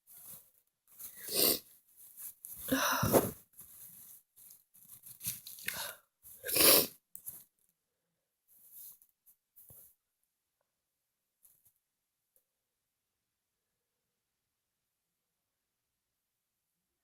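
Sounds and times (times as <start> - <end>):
person breathing in bursts: 2.7 - 3.3.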